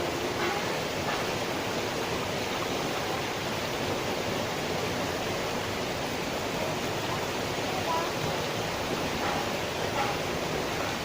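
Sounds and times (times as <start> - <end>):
flowing water rushing: 0.0 - 11.0.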